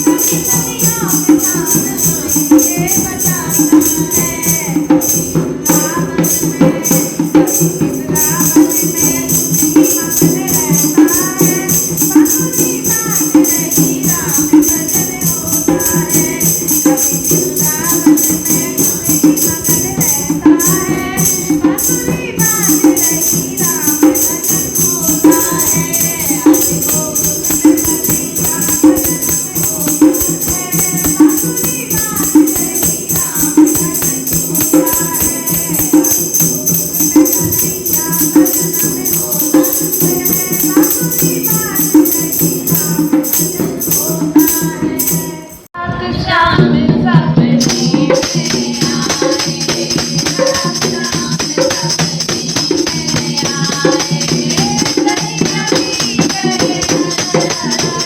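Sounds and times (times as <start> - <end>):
rhythmic beat: 0.0 - 45.7, 46.6 - 58.0
jingling percussion: 0.0 - 45.8, 46.4 - 58.0
women singing devotional song: 0.0 - 58.0.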